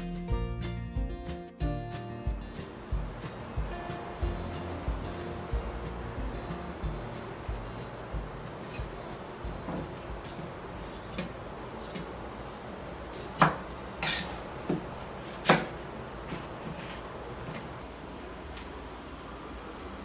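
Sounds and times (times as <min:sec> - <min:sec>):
utensils knocking and clinking: 0:02.7 - 0:16.8.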